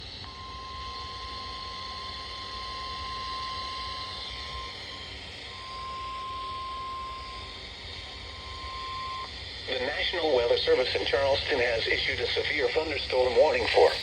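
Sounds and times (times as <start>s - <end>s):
steady alarm tone: 0.0s - 14.0s
radio static: 9.6s - 14.0s.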